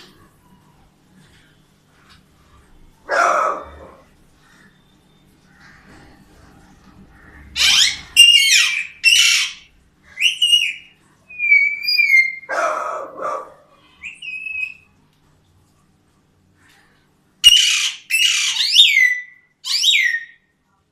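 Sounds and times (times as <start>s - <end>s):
bird screeching and whistling: 7.6s - 12.5s, 14.0s - 15.0s, 17.4s - 20.4s.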